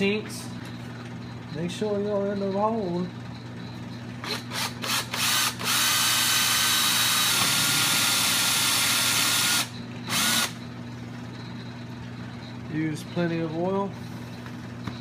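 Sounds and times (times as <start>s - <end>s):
electric drill boring metal: 4.2s - 10.6s.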